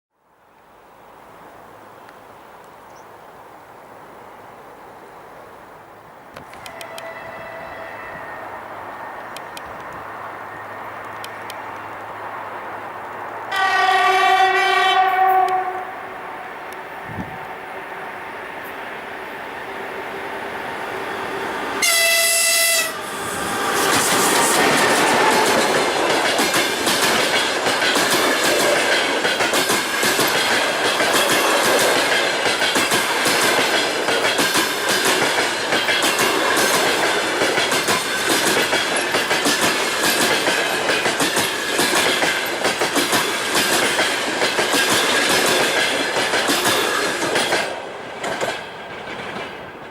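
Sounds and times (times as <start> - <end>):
high whine of passing train: 0.3 - 49.9
locomotive signal horn blast: 6.6 - 8.5, 13.5 - 16.2, 21.8 - 23.1
train wheels clacking over rail joints: 23.5 - 49.9.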